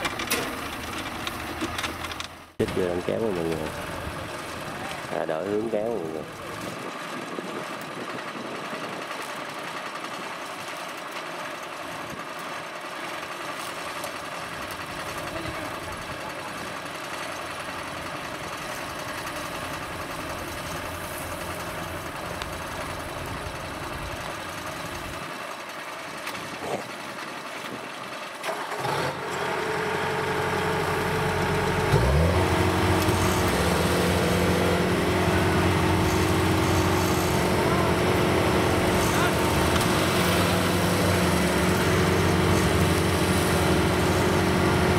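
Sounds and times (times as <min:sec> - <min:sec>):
tractor engine under load: 0:00.0 - 0:44.9.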